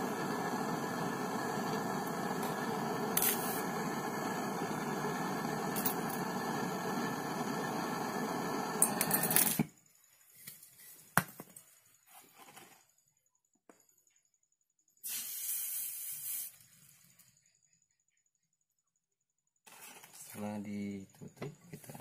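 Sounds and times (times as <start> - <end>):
pressurised gas hissing: 0.0 - 9.6, 15.0 - 16.6.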